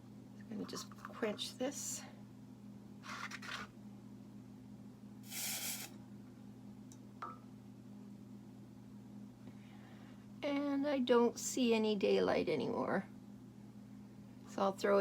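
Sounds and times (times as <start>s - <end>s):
hot metal hissing in water: 5.2s - 5.9s.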